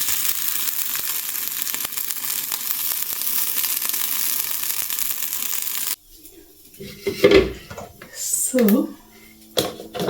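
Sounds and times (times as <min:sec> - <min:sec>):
meatballs sizzling in a frying pan: 0:00.0 - 0:06.0.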